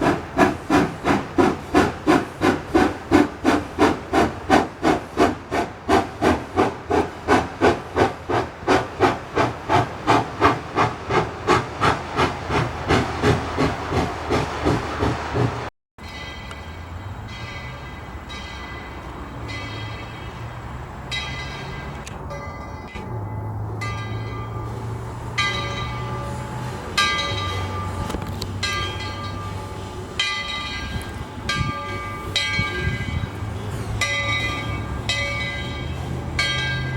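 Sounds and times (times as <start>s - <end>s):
steam locomotive chuffing: 0.0s - 22.0s, 23.0s - 36.9s.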